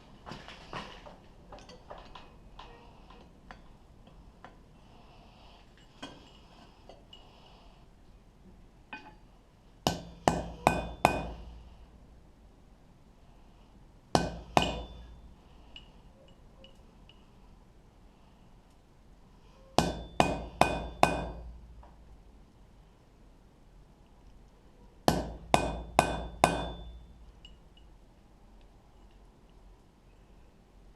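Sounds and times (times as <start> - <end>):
tools clinking: 1.5 - 4.6, 26.7 - 28.0
hammer striking metal punch: 9.8 - 11.5, 14.2 - 15.1, 19.8 - 21.6, 25.1 - 27.1.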